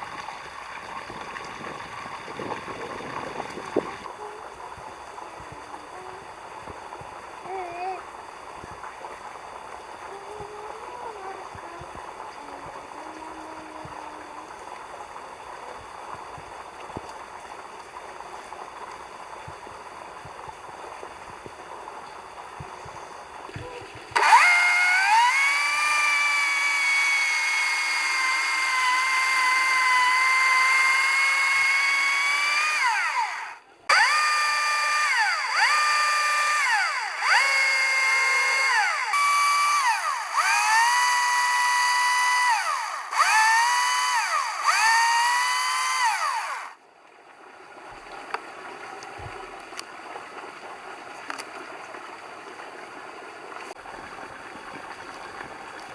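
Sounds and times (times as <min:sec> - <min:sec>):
power tool motor whining: 0:23.6 - 0:46.8.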